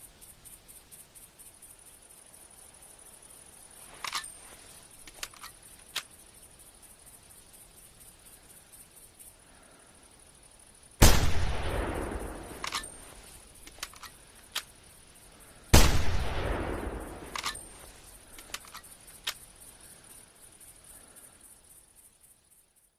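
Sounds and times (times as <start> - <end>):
rifle bolt clicking: 4.0 - 4.3, 5.1 - 6.1, 12.6 - 13.0, 13.6 - 14.7, 17.3 - 17.8, 18.4 - 19.4
rifle shots echoing: 11.0 - 14.1, 15.7 - 18.7.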